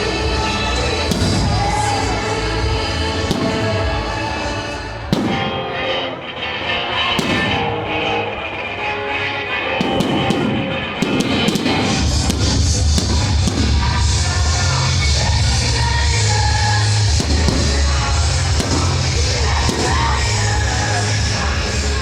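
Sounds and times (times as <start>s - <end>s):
loud music: 0.0s - 22.0s
firework bangs: 1.1s - 1.7s, 5.0s - 5.7s, 7.2s - 7.8s, 9.8s - 14.6s, 16.8s - 20.5s.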